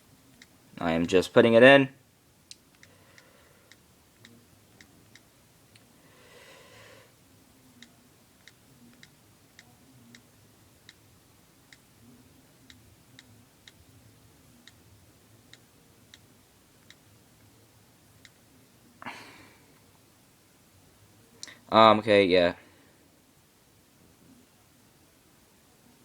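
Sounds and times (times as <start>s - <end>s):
faint keyboard ticks: 7.8s - 11.0s.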